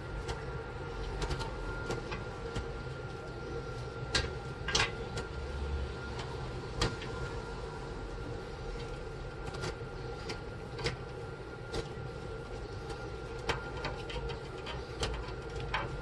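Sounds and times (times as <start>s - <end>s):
steady room hum: 0.0s - 16.0s
computer parts clicking and tapping: 0.2s - 2.8s, 12.9s - 16.0s.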